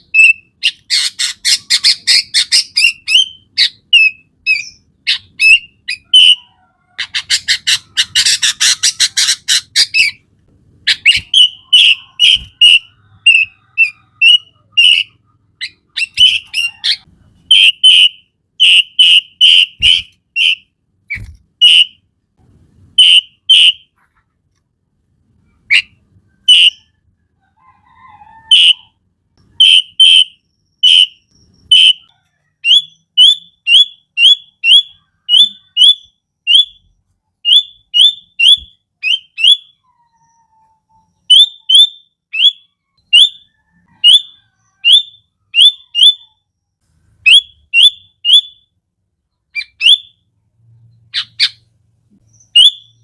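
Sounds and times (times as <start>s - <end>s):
bird whistling and trilling: 0.0s - 6.5s, 10.9s - 22.0s, 25.7s - 26.9s, 29.6s - 40.4s, 41.2s - 46.4s, 47.3s - 48.6s, 49.6s - 50.2s, 52.2s - 53.0s.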